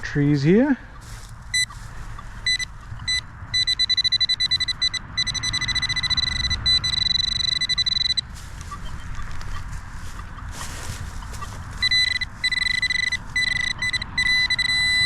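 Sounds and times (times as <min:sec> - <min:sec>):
metal detector pinpointer beeping: 0:01.5 - 0:01.8, 0:02.4 - 0:09.6, 0:11.4 - 0:15.0.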